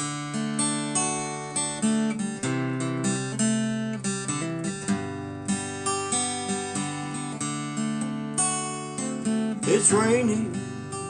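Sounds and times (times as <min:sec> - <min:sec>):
acoustic guitar blues: 0:00.0 - 0:11.0.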